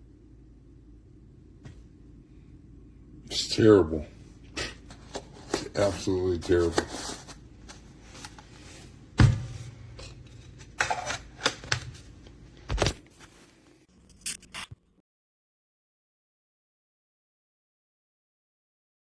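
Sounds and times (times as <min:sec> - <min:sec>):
scrapes and rustles: 0:04.8 - 0:09.0.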